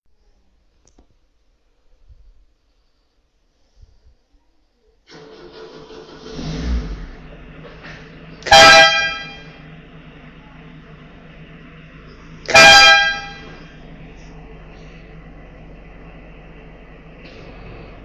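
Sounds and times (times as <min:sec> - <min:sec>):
steady low hum: 0:05.9 - 0:18.0
vehicle horn blasts: 0:08.4 - 0:09.7, 0:12.4 - 0:13.8.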